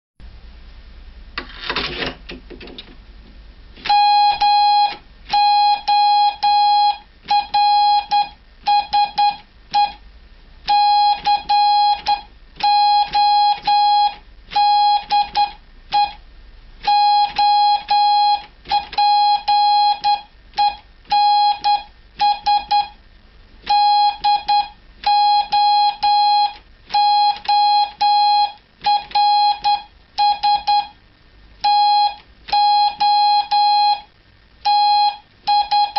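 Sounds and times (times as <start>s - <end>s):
morse code beeps: 3.9s - 10.0s, 10.7s - 16.2s, 16.9s - 23.0s, 23.7s - 31.0s, 31.6s - 35.9s.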